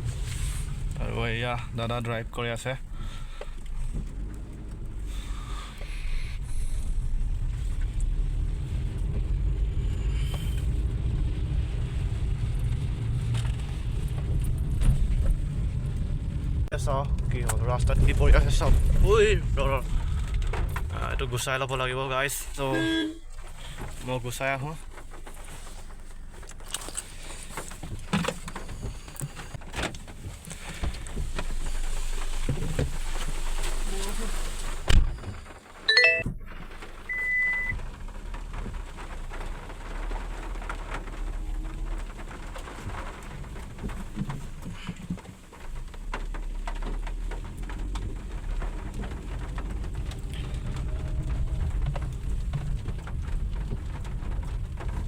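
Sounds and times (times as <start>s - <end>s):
car engine idling: 0.0s - 8.3s
low rain rumble: 0.0s - 55.0s
raindrops hitting: 0.0s - 55.0s.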